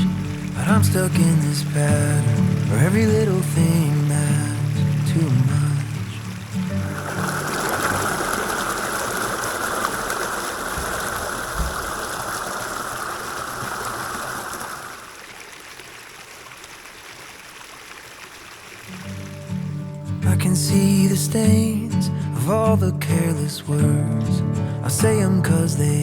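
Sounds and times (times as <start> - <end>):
stream water rushing: 0.0 - 20.1.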